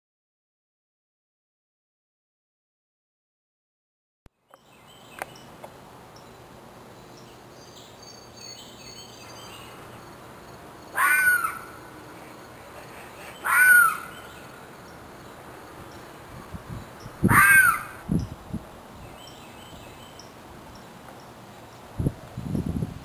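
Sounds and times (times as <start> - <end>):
faint background hiss: 4.3 - 23.0
bird calling loudly: 10.9 - 14.6, 17.0 - 18.1.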